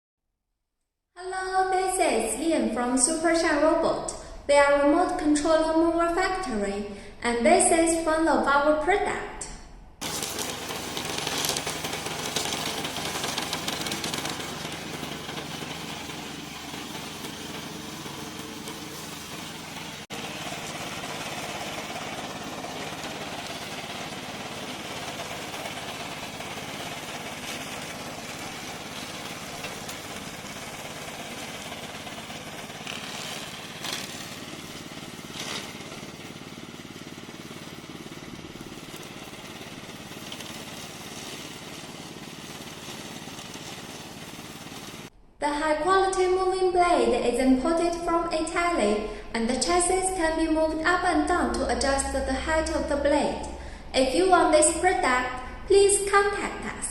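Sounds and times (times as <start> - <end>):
lawn mower engine running: 10.0 - 45.1.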